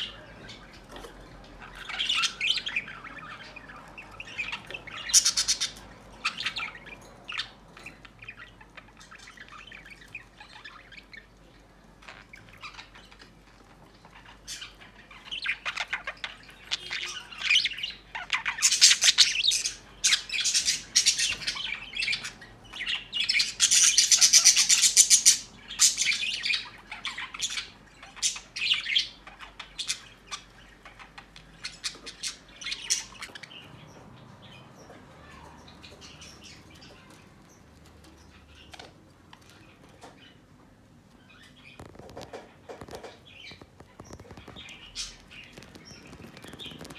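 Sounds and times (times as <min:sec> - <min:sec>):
bird squawking and chirping: 0:00.0 - 0:11.4, 0:14.1 - 0:33.8, 0:41.2 - 0:46.9.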